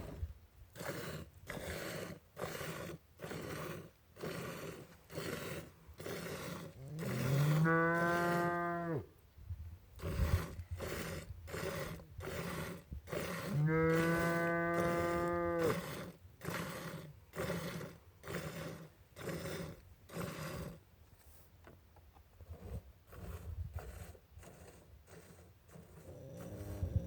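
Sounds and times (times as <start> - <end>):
cow mooing: 6.2 - 9.0, 10.9 - 16.8.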